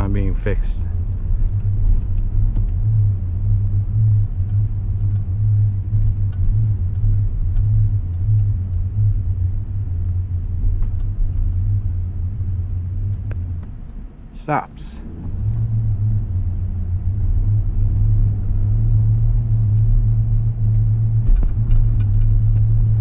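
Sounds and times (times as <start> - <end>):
low droning hum in vehicle: 0.0 - 23.0
road rumble: 0.0 - 23.0.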